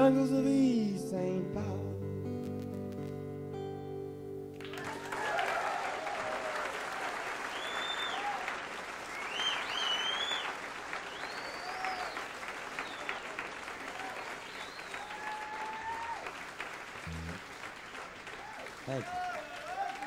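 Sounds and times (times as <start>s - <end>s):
audience applauding: 4.6s - 20.0s
audience cheering: 4.6s - 20.0s
whistles: 7.4s - 15.9s.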